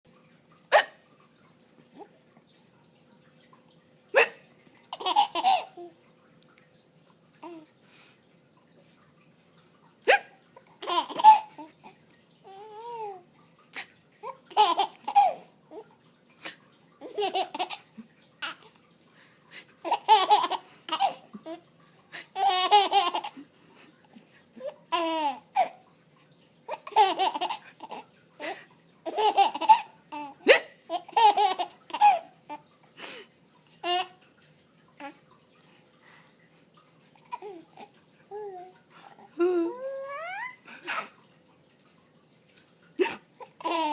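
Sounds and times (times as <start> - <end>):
baby laughing: 4.2 - 5.9, 10.1 - 13.2, 14.2 - 15.8, 17.0 - 18.6, 19.8 - 21.6, 22.2 - 23.4, 24.6 - 25.8, 26.7 - 32.6, 33.8 - 34.2, 37.2 - 41.2, 43.0 - 43.9.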